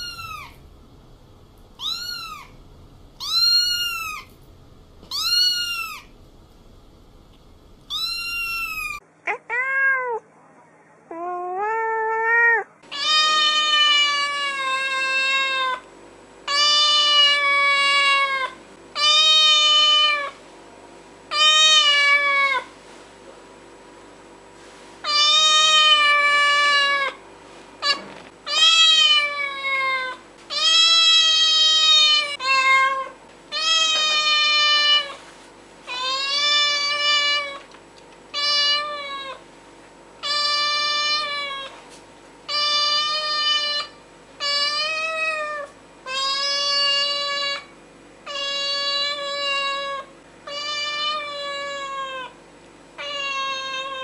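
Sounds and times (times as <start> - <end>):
cat meowing: 0.0 - 0.6, 1.8 - 2.6, 3.2 - 4.3, 5.1 - 6.1, 7.9 - 10.2, 11.1 - 15.8, 27.8 - 35.2, 48.3 - 52.4, 53.0 - 54.0.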